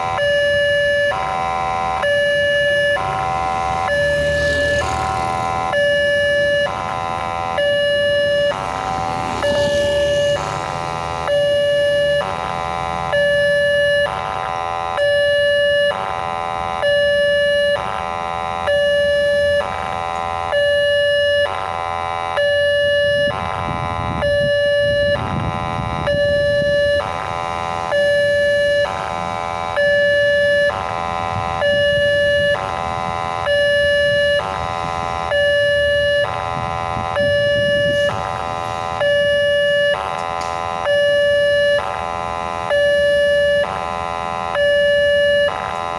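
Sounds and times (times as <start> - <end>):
two-tone level crossing siren: 0.0 - 45.9.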